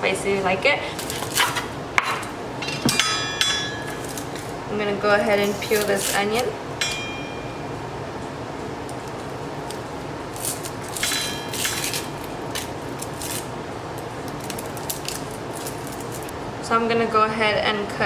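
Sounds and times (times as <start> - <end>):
onion skin crackling: 0.8 - 2.3, 3.8 - 6.6, 8.8 - 16.3.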